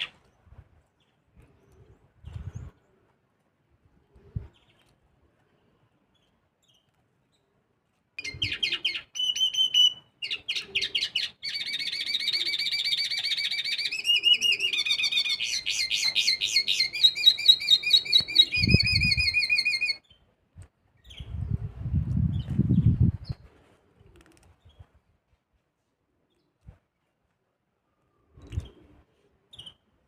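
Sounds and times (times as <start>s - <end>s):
finch singing chirps and trills: 8.2s - 20.2s.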